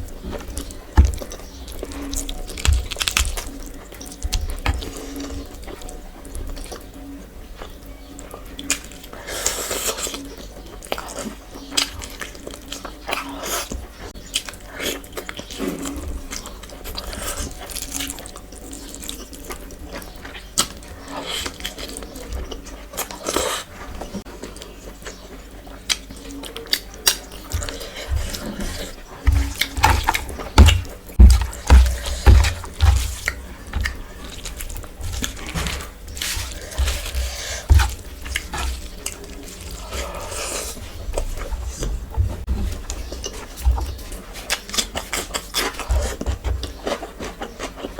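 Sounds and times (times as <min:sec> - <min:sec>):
wet chewing and smacking: 0:00.0 - 0:47.9
heavy low thumps: 0:29.3 - 0:33.9.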